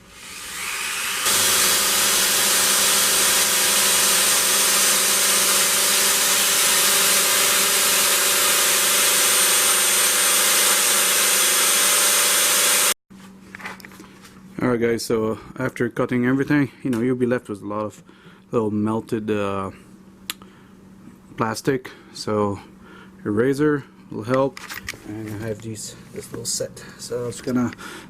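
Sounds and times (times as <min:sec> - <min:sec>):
cut-off wheel whining: 0:00.0 - 0:13.0.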